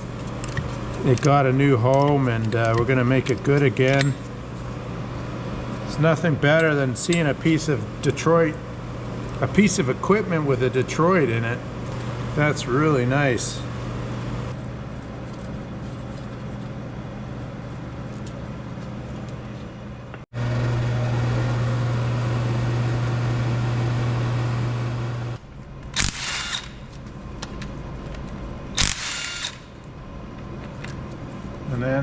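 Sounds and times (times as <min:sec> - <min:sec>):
low machine hum: 0:00.0 - 0:26.0
handheld power tool bursts: 0:26.0 - 0:26.8, 0:28.8 - 0:29.7.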